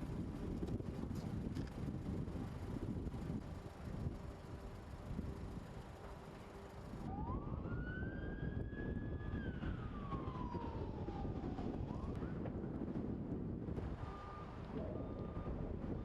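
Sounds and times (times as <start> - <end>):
siren wailing: 7.0 - 12.3, 14.0 - 15.8.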